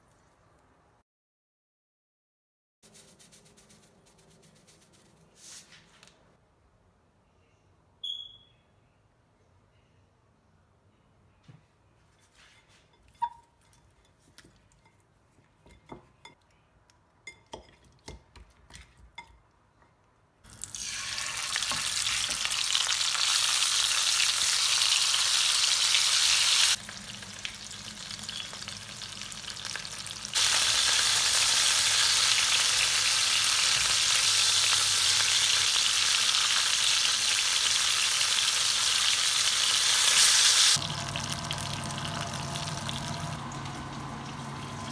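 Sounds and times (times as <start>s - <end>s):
food sizzling in hot oil: 20.5s - 44.9s.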